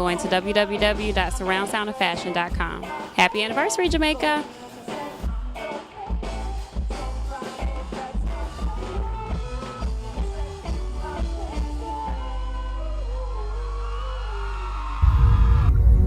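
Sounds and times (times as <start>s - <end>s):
music with heavy bass: 0.0s - 3.2s, 3.8s - 16.0s
held bass drone: 10.0s - 16.0s.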